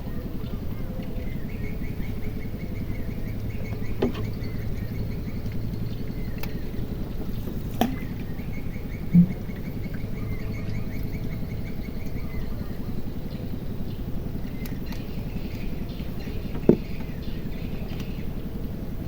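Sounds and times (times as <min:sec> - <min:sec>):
boat engine humming: 0:00.0 - 0:19.0
dull knock: 0:09.2 - 0:09.6.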